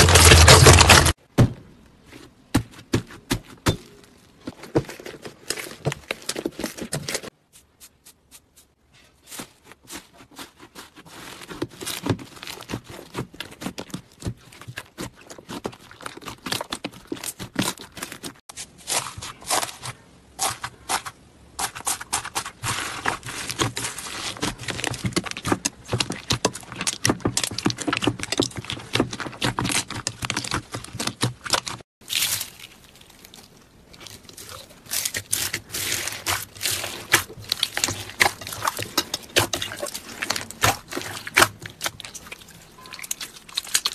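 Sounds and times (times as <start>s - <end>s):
slime crackling and popping: 23.0s - 43.9s.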